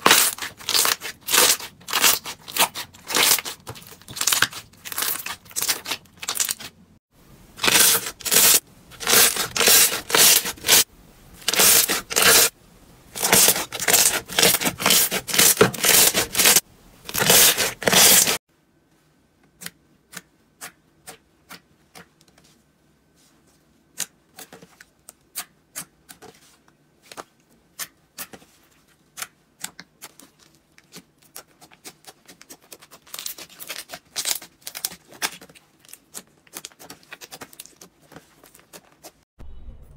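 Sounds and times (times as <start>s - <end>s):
slime crackling and popping: 0.0s - 6.7s, 30.9s - 38.8s.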